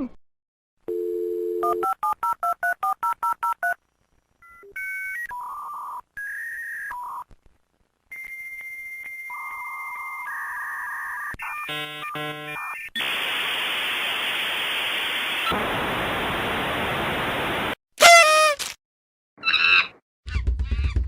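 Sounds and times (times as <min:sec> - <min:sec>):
dial tone: 0:00.9 - 0:02.0.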